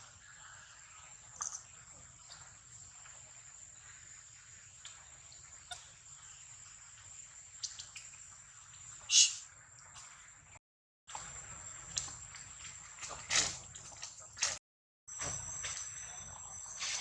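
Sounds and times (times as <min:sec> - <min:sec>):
thin high whine: 0:15.1 - 0:17.0.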